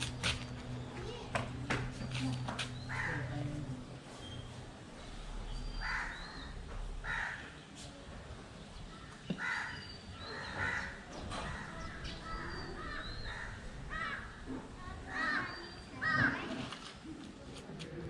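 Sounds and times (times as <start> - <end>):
crows cawing: 2.9 - 3.4, 5.8 - 7.5, 9.3 - 14.4.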